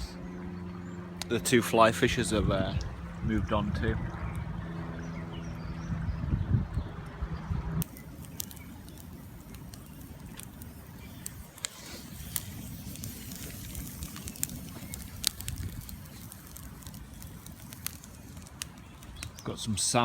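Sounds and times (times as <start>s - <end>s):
steady droning hum: 0.0s - 20.0s
wind rumbling on microphone: 1.8s - 20.0s
sharp crackles and clicks: 7.8s - 20.0s.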